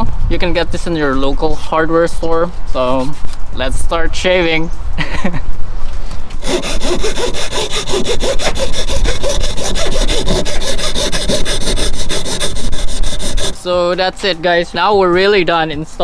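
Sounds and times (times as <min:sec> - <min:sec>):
hand file rasping: 0:02.8 - 0:03.4, 0:06.4 - 0:13.6.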